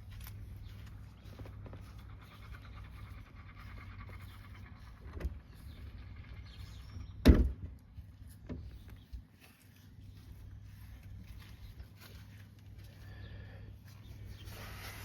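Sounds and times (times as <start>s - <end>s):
loud sharp thump: 7.2s - 7.7s.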